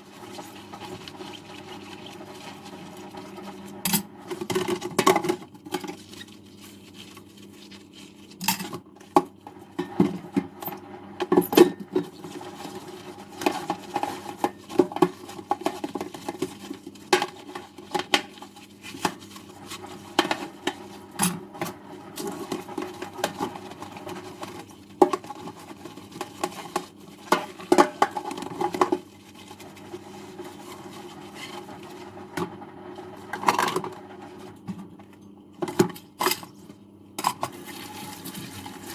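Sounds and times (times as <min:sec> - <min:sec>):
running water wash: 0:00.0 - 0:03.8.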